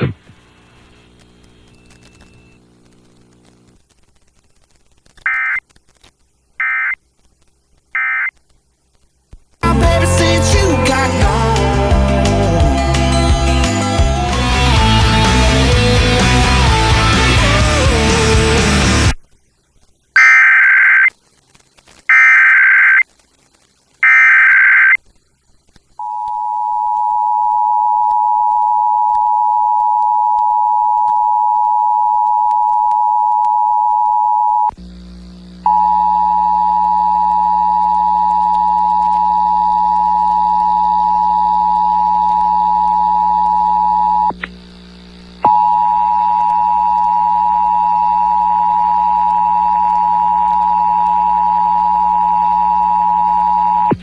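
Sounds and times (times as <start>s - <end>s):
screeching digital bursts: 22.1s - 23.4s
low electrical hum: 34.6s - 54.0s.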